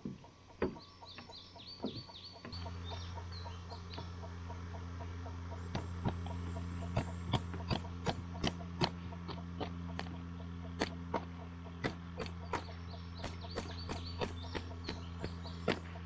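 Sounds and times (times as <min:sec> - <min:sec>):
low motor hum: 0:00.0 - 0:16.0
sharp clicks and taps: 0:05.7 - 0:10.2, 0:10.8 - 0:15.9.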